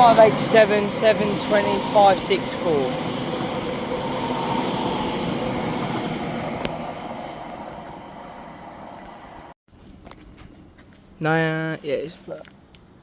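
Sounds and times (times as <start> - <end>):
train wheels rumbling: 0.0 - 9.6.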